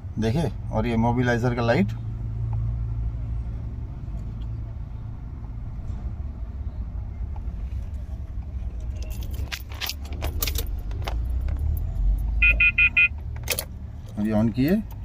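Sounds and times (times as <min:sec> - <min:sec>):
car keys clicking and rattling: 0:08.4 - 0:15.0
quick electronic beeps: 0:12.4 - 0:13.1.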